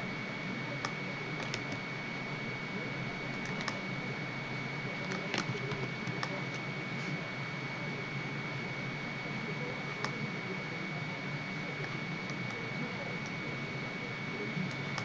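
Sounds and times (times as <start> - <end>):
mouse and keyboard clicks: 5.1 - 6.6.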